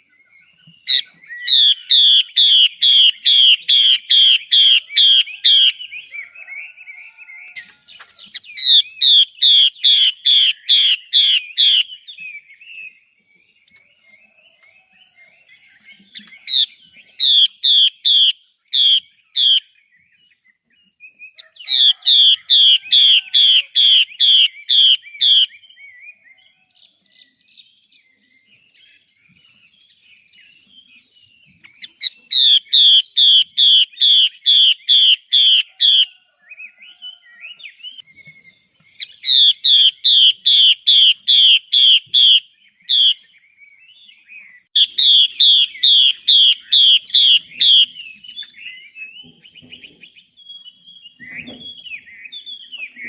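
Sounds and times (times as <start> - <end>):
faint bird twittering: 0.0 - 53.0
bird whistling downward notes: 37.4 - 49.8.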